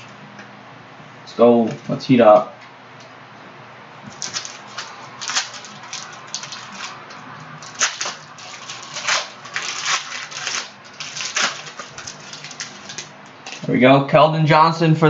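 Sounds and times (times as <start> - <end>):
trading cards rustling: 4.1 - 13.6.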